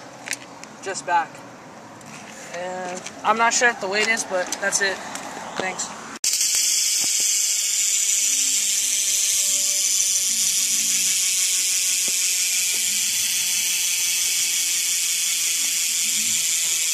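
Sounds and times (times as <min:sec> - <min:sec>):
bike hub ratchet buzzing: 0:06.2 - 0:16.9.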